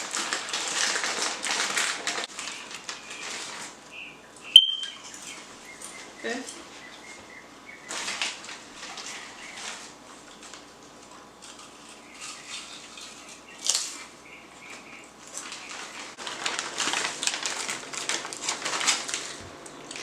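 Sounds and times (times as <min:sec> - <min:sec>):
crunching crisp snack: 0:00.0 - 0:03.8, 0:07.9 - 0:20.0.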